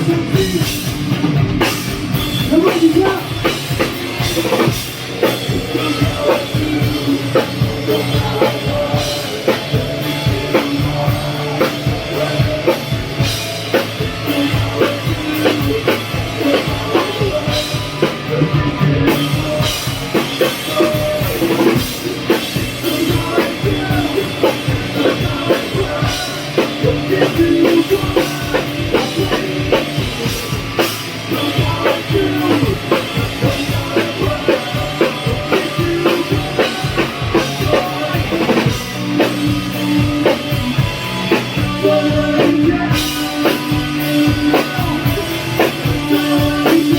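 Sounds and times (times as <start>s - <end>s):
drum kit beating: 0.0s - 46.9s
rock band playing: 0.0s - 46.9s.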